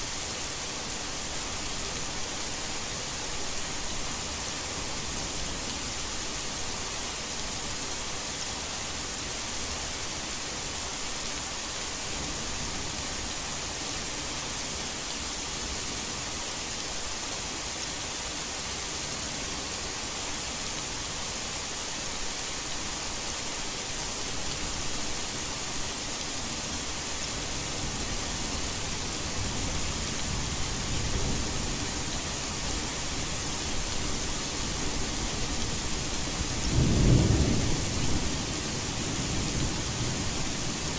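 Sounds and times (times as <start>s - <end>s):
heavy rain: 0.0s - 40.9s
low rumble of thunder: 35.4s - 40.9s.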